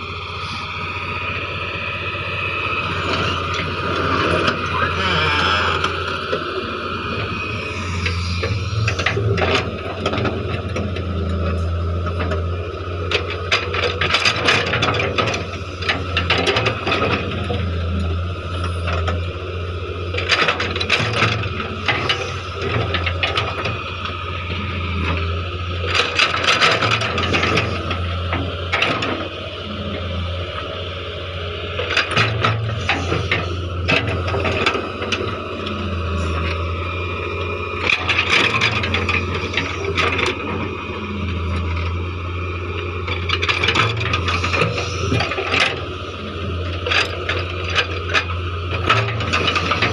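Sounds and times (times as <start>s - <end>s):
excavator diesel engine running: 0.0s - 49.9s.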